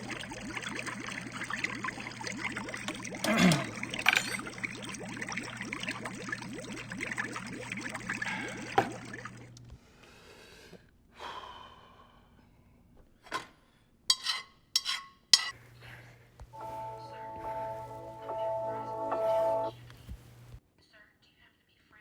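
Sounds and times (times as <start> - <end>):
running water: 0.0 - 9.6, 16.6 - 20.6
person breathing or gasping: 9.8 - 12.4.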